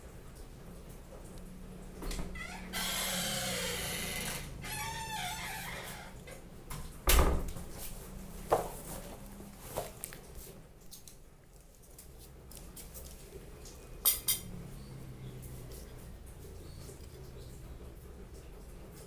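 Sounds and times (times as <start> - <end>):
kitchenware clinking: 14.0 - 14.5.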